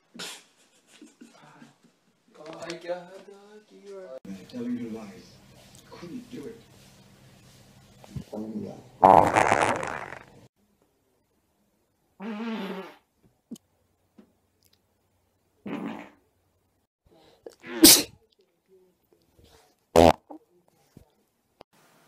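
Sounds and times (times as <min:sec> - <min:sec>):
farts: 0:09.0 - 0:10.3, 0:12.2 - 0:13.1, 0:15.7 - 0:16.2, 0:20.0 - 0:20.3.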